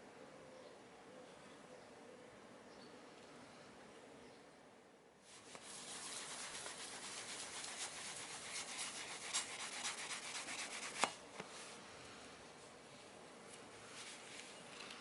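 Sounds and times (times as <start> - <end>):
hand rubbing hard surface: 5.3 - 11.1.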